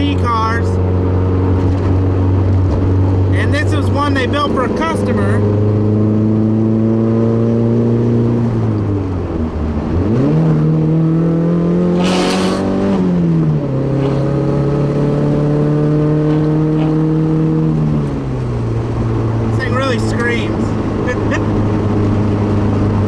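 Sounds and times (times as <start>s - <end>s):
car engine drone with gear changes: 0.0s - 23.0s
short hiss: 12.0s - 12.7s.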